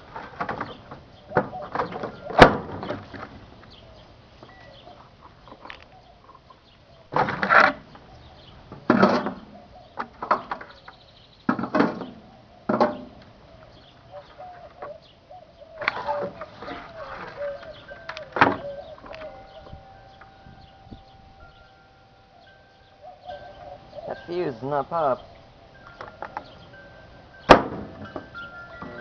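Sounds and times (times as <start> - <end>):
faint wavering tone: 4.5 - 5.0, 16.4 - 29.0.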